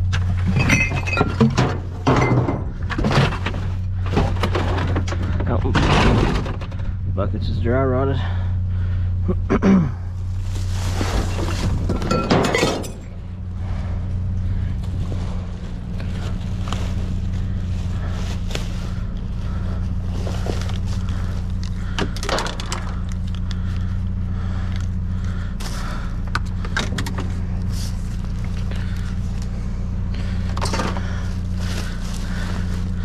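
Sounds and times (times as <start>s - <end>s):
junk knocking and rattling: 0.0s - 7.3s, 10.9s - 33.0s
steady low hum: 0.0s - 33.0s
plastic buckets cracking: 20.0s - 23.9s.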